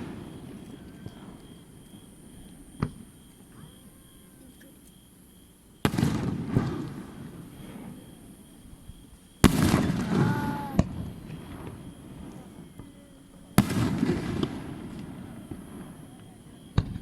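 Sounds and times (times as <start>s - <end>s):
firework shells bursting: 9.4s - 13.0s, 13.6s - 17.0s.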